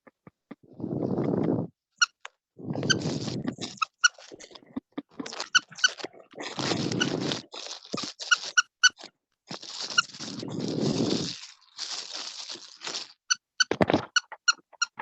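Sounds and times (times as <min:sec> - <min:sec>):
small animal squeaking: 0:02.0 - 0:15.0
rustling crunching noise: 0:02.6 - 0:14.2.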